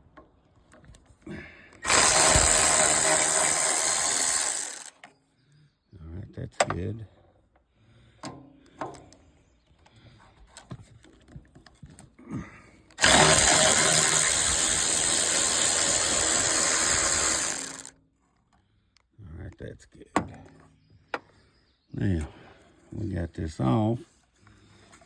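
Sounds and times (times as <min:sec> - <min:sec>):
electric ratchet running: 0:01.8 - 0:05.0, 0:13.0 - 0:17.9.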